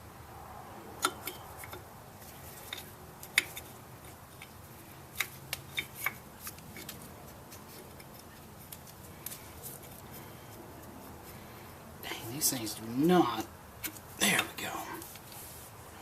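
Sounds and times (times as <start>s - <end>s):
metal clicks of brake parts: 1.0s - 1.9s.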